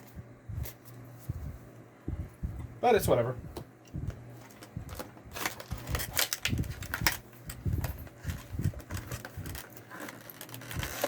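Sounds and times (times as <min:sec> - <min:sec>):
plastic packaging crinkling: 0:04.5 - 0:11.0.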